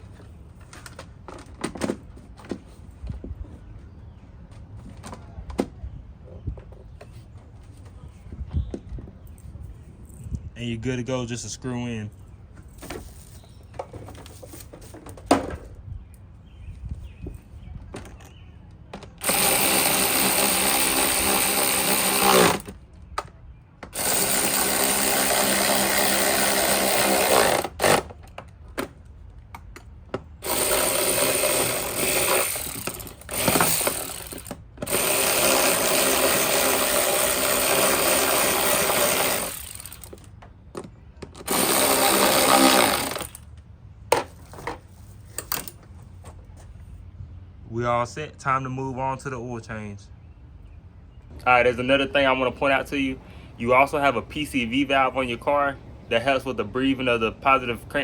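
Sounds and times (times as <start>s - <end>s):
power drill driving screws: 19.2s - 22.8s, 23.9s - 28.1s, 30.4s - 40.3s, 41.4s - 43.4s.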